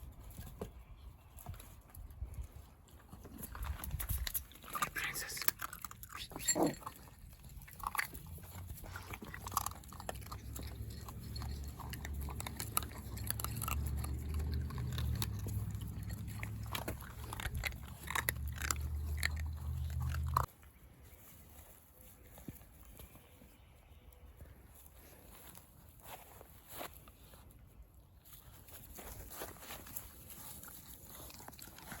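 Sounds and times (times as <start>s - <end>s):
dog chewing with crunching clicks: 1.4s - 20.5s, 29.5s - 32.0s.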